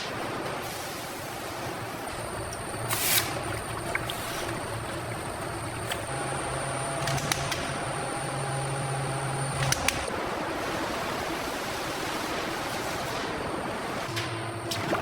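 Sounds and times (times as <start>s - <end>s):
factory machinery noise: 0.0s - 15.0s
low hum: 2.1s - 10.1s
sharp clicks: 7.0s - 7.8s.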